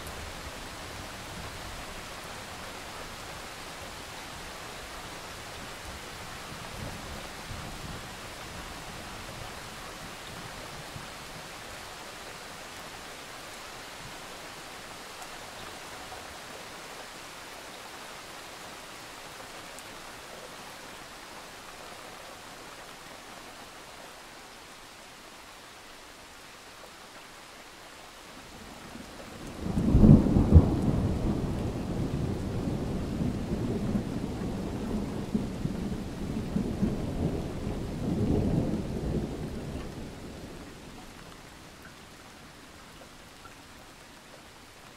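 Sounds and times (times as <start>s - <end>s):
steady rain: 0.0s - 44.9s
low thunder rumble: 29.4s - 40.9s.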